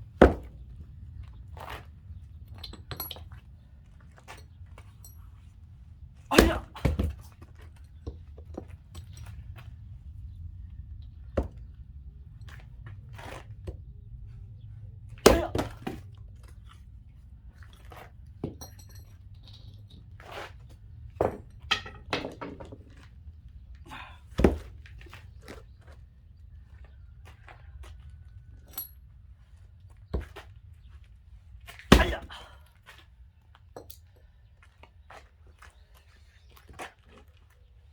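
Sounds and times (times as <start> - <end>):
axe splitting firewood: 0.2 - 0.6, 6.3 - 7.7, 15.2 - 16.1, 21.2 - 23.1, 24.0 - 25.0, 31.7 - 32.6
wood pieces clattering: 21.2 - 23.1.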